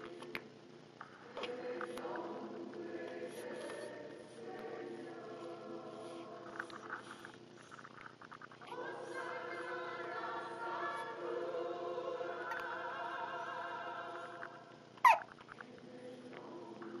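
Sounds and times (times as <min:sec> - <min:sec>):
baby hiccuping: 0:15.0 - 0:15.4.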